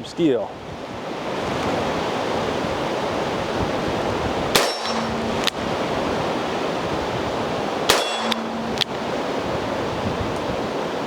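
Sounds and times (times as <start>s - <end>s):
wind noise on microphone: 0.0s - 11.0s
steel target ringing: 4.5s - 6.5s, 7.9s - 9.0s
revolver shots: 4.6s - 5.7s, 7.9s - 9.0s.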